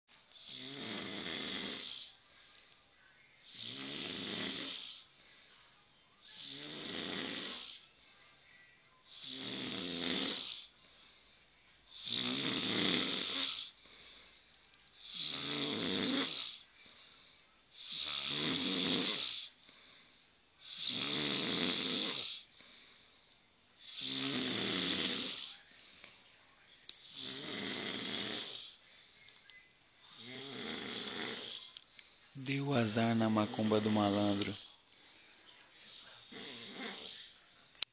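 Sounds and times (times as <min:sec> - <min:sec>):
person snoring heavily: 0:00.4 - 0:02.1, 0:03.4 - 0:05.0, 0:06.4 - 0:07.8, 0:09.1 - 0:10.7, 0:11.9 - 0:13.8, 0:15.0 - 0:16.6, 0:17.8 - 0:19.5, 0:20.6 - 0:22.5, 0:23.8 - 0:25.6, 0:27.1 - 0:28.8, 0:30.2 - 0:31.7, 0:32.6 - 0:34.6, 0:36.2 - 0:37.4.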